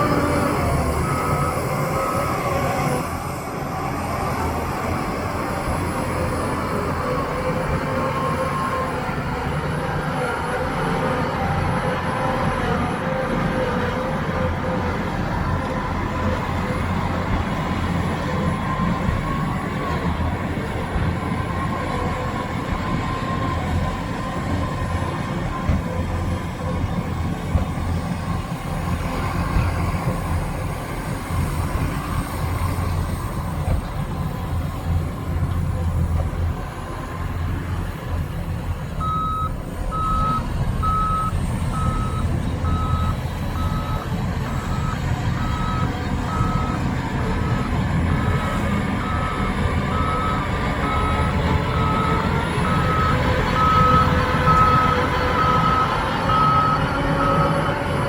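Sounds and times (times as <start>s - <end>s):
reversing alarm beeping: 0.0s - 3.2s, 39.0s - 48.4s, 49.0s - 57.8s
diesel machinery rumble: 0.0s - 58.0s.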